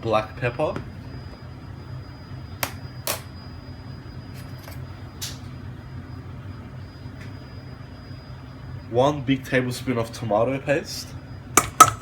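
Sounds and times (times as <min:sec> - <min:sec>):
steady low hum: 0:00.0 - 0:12.0
utensil clicking on mixing bowl: 0:11.6 - 0:12.0.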